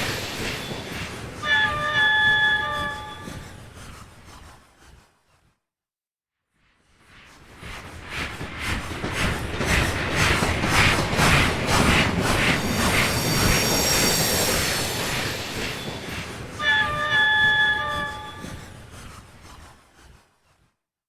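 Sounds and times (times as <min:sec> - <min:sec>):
steam locomotive exhaust chuffing: 0:00.0 - 0:04.4, 0:08.0 - 0:19.6
multi-toned train whistle: 0:01.4 - 0:03.6, 0:12.7 - 0:18.9.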